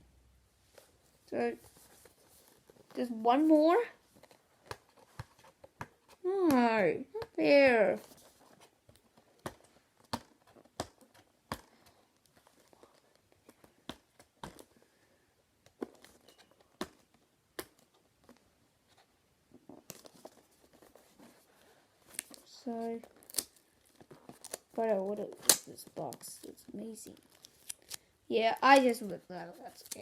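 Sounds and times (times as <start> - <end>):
packaging crinkling: 22.0 - 30.0.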